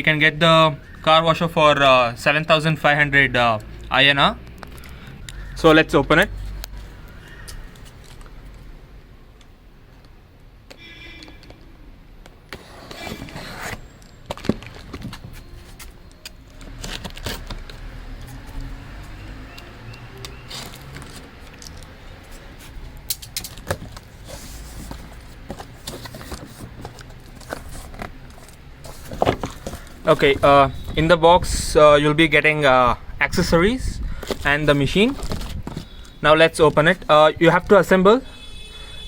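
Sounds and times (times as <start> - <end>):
cardboard box being unpacked: 12.6 - 16.0, 16.6 - 18.4, 23.5 - 30.5, 34.2 - 36.0.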